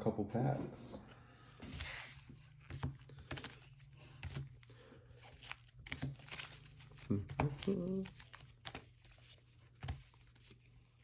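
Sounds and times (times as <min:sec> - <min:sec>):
foil packs crinkling: 0:02.8 - 0:11.0.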